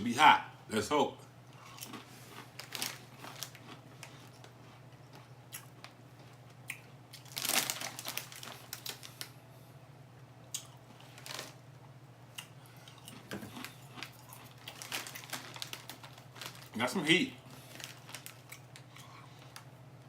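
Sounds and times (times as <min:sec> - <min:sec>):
potato chips crunching: 0:01.6 - 0:09.4, 0:10.6 - 0:11.6, 0:12.3 - 0:19.7
foil bag crinkling: 0:02.2 - 0:04.4, 0:07.2 - 0:09.4, 0:10.9 - 0:11.6, 0:13.2 - 0:19.7.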